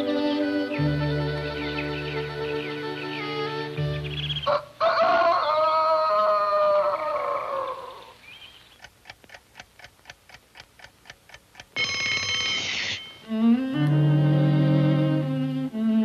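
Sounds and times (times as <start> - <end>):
clock ticking softly: 8.3 - 13.3
alarm clock bell ringing: 11.8 - 13.3.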